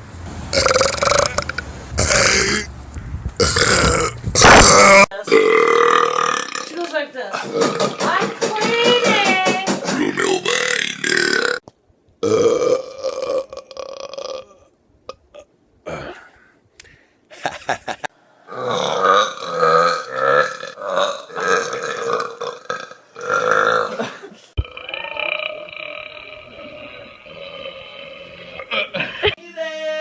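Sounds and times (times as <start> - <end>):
person belching: 0.6 - 2.7, 3.4 - 8.2, 10.0 - 11.6, 12.2 - 14.7, 15.3 - 16.3, 18.5 - 29.3.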